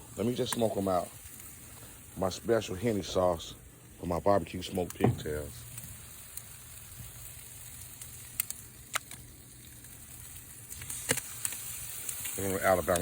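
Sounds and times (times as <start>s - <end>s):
meat sizzling with pops: 0.0s - 13.0s.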